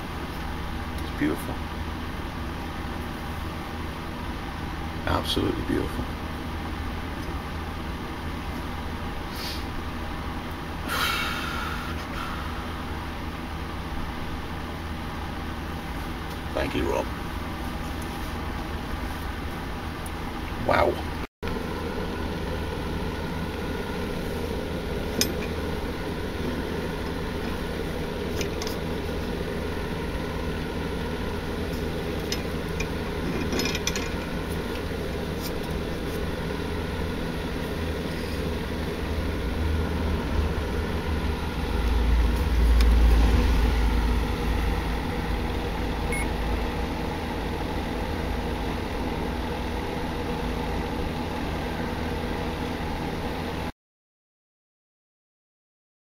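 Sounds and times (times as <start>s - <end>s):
steady droning hum: 0.0s - 53.7s
deep rumble: 38.9s - 46.9s.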